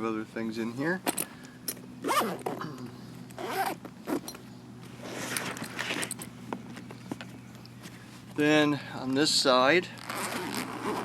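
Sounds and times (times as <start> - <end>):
zipper rasping open: 2.0 - 4.4, 10.0 - 11.0.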